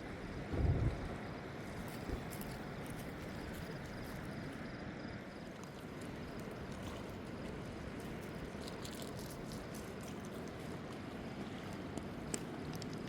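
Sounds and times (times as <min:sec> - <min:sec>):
flowing river water: 0:00.0 - 0:13.0.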